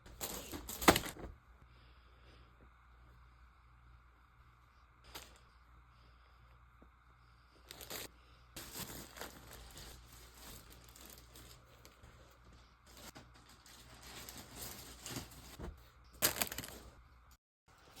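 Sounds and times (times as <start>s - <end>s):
plastic packaging crinkling and tearing: 7.7s - 12.0s.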